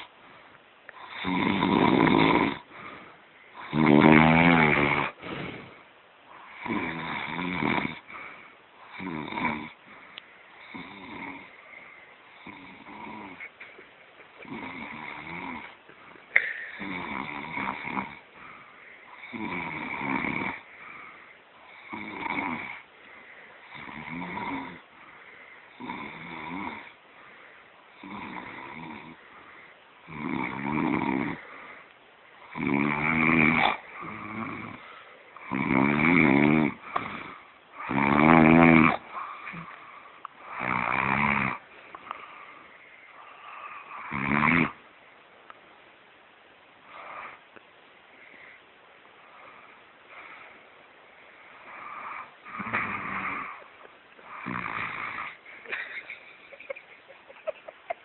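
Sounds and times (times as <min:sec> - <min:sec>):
person snoring: 0:01.0 - 0:02.7, 0:03.5 - 0:05.8, 0:06.4 - 0:09.8, 0:10.6 - 0:13.5, 0:14.4 - 0:18.5, 0:19.1 - 0:21.0, 0:21.6 - 0:22.8, 0:23.6 - 0:24.8, 0:25.7 - 0:27.0, 0:28.0 - 0:29.2, 0:30.0 - 0:31.7, 0:32.4 - 0:44.8, 0:51.6 - 0:55.8.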